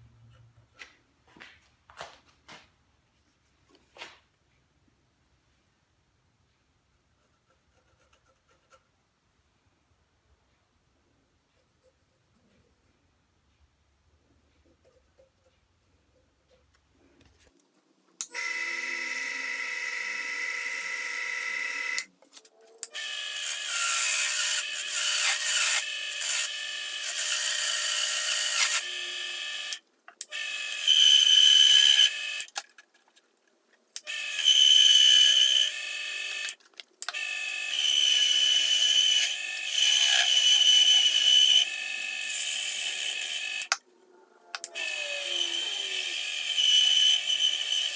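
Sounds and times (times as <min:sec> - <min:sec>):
wood lathe whine: 0:18.3 - 0:22.1, 0:22.8 - 0:29.8, 0:30.4 - 0:32.6, 0:34.1 - 0:43.8, 0:44.6 - 0:47.9.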